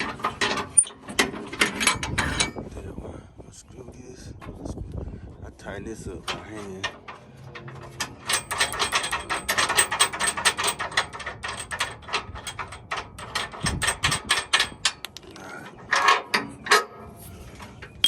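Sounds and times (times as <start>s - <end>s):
metal clanks: 0.0s - 2.6s, 6.3s - 17.0s.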